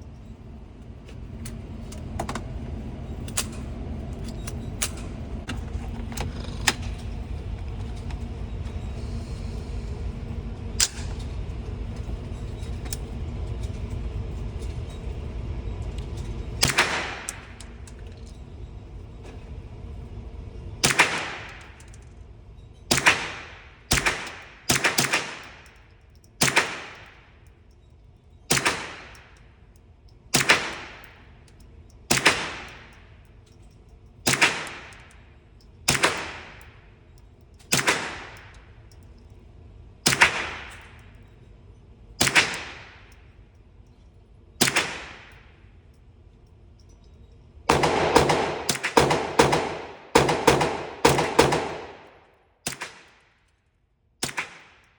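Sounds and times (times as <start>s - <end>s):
suppressed gunshots: 20.8s - 21.6s, 22.9s - 25.6s, 26.4s - 27.1s, 28.5s - 29.2s, 32.1s - 32.9s, 34.3s - 35.0s, 35.9s - 36.6s, 37.7s - 38.5s, 42.2s - 43.0s, 44.6s - 45.4s, 47.7s - 53.2s.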